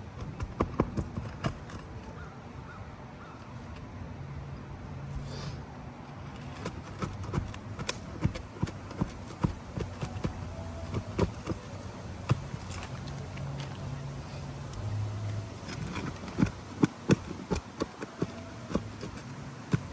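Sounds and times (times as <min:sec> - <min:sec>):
hand tools tapping on roof shingles: 0:00.0 - 0:02.1, 0:06.4 - 0:13.4, 0:15.3 - 0:19.9.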